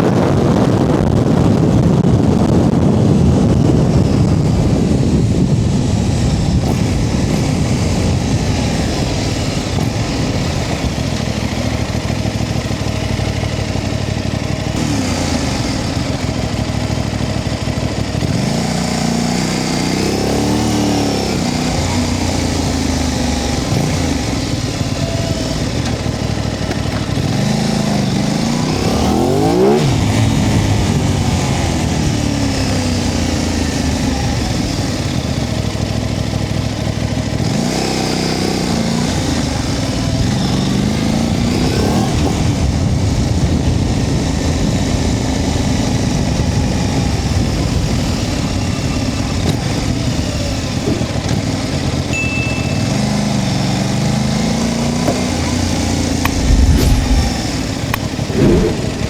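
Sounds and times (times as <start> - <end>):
loud wind rush: 0.0 - 13.1, 56.0 - 59.0
motorcycle engine: 0.0 - 59.0.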